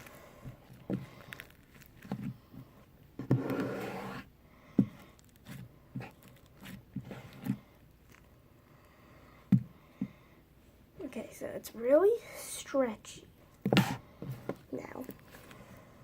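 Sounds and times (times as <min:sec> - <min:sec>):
slime squelching by hand: 0:00.0 - 0:08.4.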